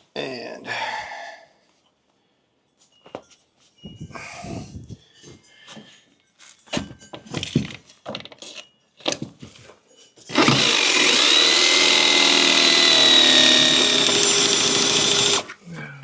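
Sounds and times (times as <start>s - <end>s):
power drill drilling: 10.3s - 15.5s.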